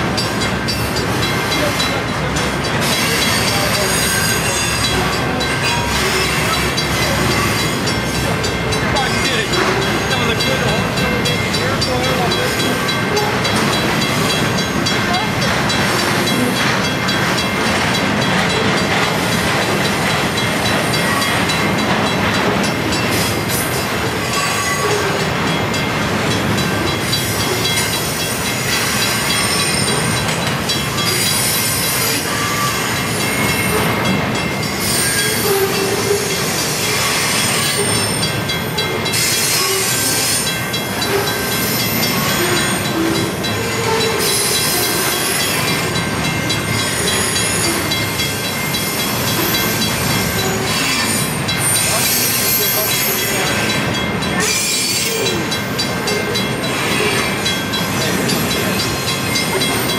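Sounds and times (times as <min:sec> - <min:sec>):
train wheels rumbling on track: 0:00.0 - 0:59.9
high-pitched wheel squeal: 0:34.8 - 0:38.2, 0:54.4 - 0:55.4.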